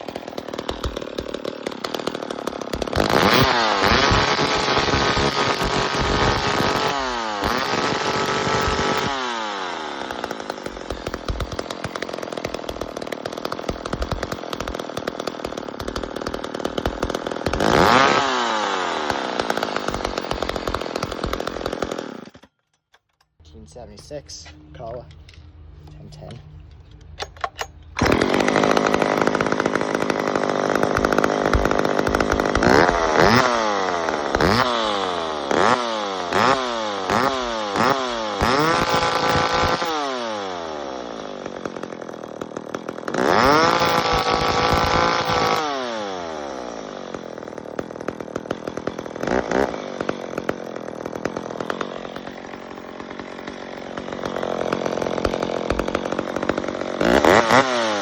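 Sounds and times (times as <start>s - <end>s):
chainsaw engine revving: 0.0s - 22.4s, 27.9s - 58.0s.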